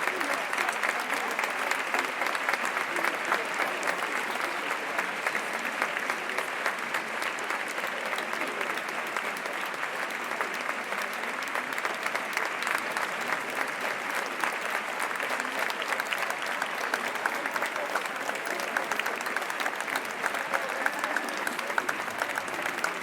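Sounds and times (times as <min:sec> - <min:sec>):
crowd applauding: 0:00.0 - 0:23.0.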